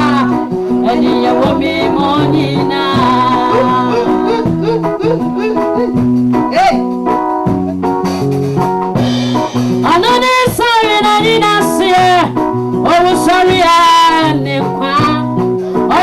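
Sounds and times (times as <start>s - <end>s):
person singing: 0.0s - 6.0s, 9.8s - 16.0s
band playing worship song: 0.0s - 16.0s.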